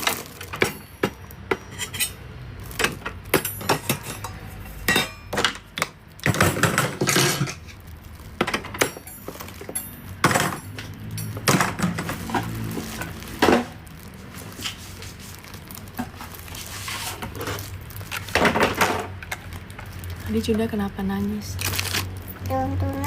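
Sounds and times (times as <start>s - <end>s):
toy dishes clinking and clattering: 0.0s - 13.8s.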